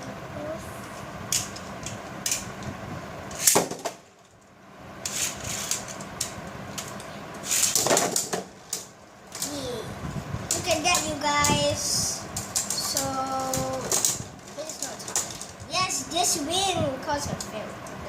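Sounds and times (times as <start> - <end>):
spinning tops whirring: 5.0 - 8.4
plastic tops clacking: 12.4 - 15.7.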